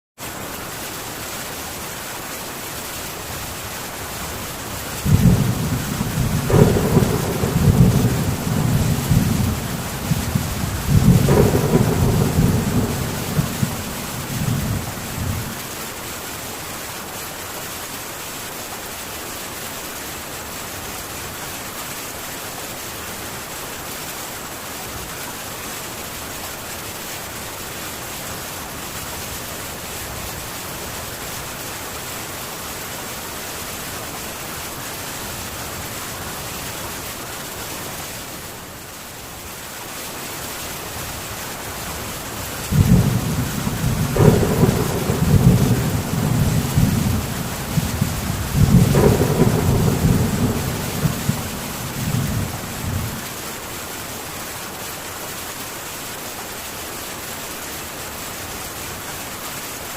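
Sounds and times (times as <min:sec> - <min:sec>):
rain on a tin roof: 0:00.2 - 0:59.9
thunder rumbling: 0:05.0 - 0:15.7, 0:42.6 - 0:53.4.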